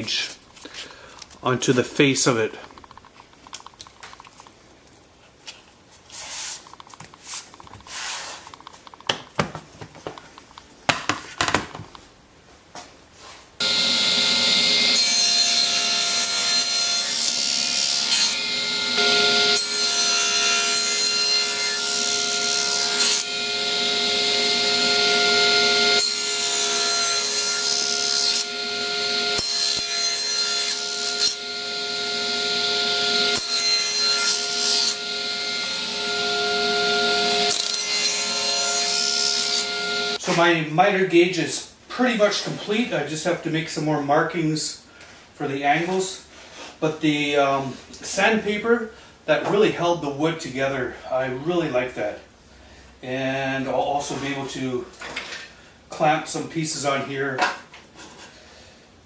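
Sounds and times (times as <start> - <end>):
rustling and handling noises: 2.6 - 13.6
power saw cutting wood: 13.6 - 40.3.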